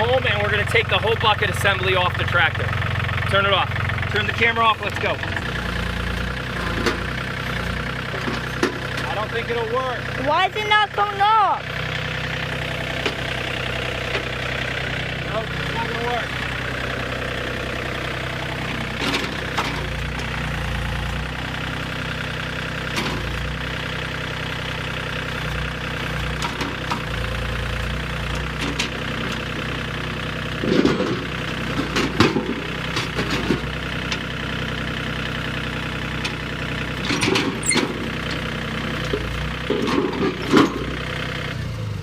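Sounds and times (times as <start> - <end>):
tractor engine idling: 0.0 - 42.0
loud metal knocks and clanks: 8.1 - 9.2, 17.7 - 20.8, 30.6 - 33.7.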